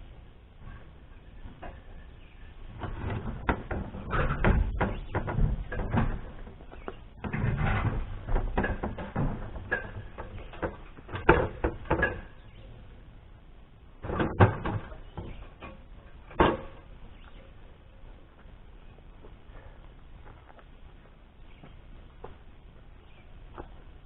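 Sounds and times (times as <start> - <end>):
metal knocks clanks and rattles: 2.7 - 12.8, 14.0 - 17.6
metal scraping: 7.1 - 12.6.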